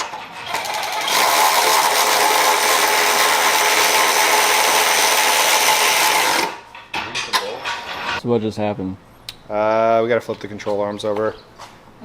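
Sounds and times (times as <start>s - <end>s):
power tool running: 0.0s - 6.6s.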